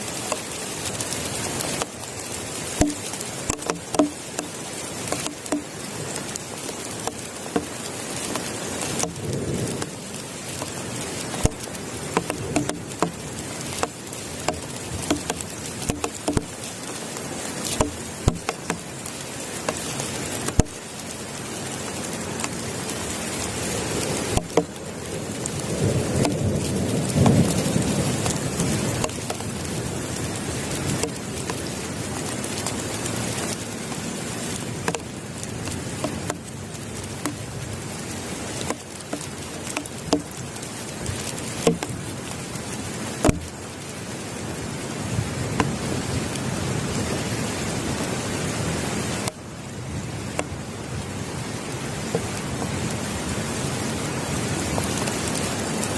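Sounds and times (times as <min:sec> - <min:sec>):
heavy rain falling: 0:00.0 - 0:55.9
rain drops hitting a surface: 0:00.0 - 0:55.9
low rumble of thunder: 0:25.2 - 0:30.0.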